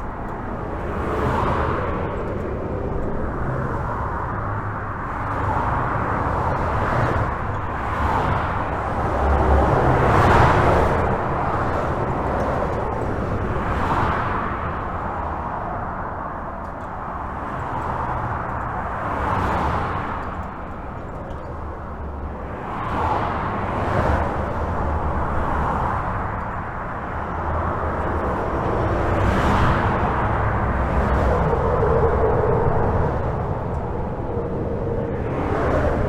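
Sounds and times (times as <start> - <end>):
highway traffic rumble: 0.0 - 36.0
heavy vehicle low tone: 24.6 - 36.0.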